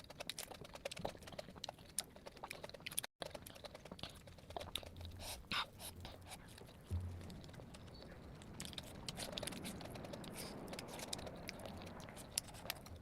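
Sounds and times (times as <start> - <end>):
wet chewing clicks: 0.0 - 13.0
low thump: 6.9 - 7.6.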